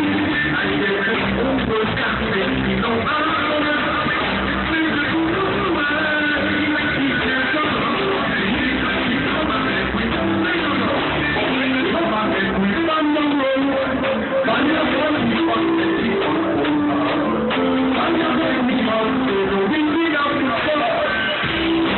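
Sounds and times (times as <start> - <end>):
electric guitar: 0.0 - 21.9
reggae band playing: 0.0 - 21.9.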